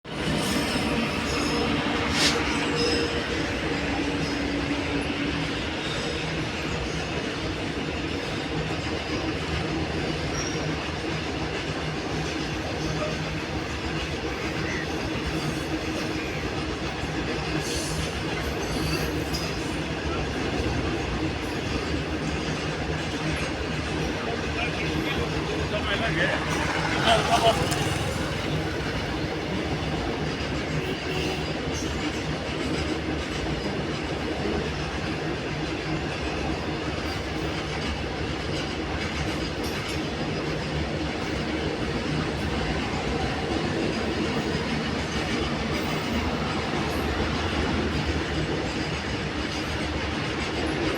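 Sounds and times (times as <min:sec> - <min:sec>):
train rumbling over bridge: 0:00.0 - 0:50.9
faint wheel squeals: 0:23.4 - 0:30.3.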